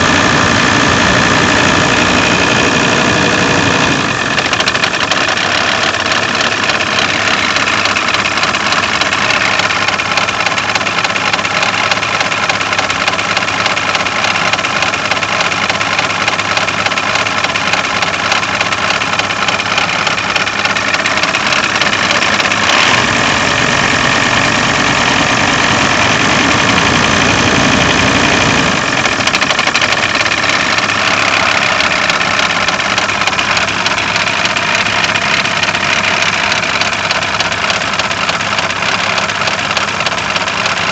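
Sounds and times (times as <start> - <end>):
diesel engine idling: 0.0 - 40.9
engine pulley knocking: 2.7 - 40.9.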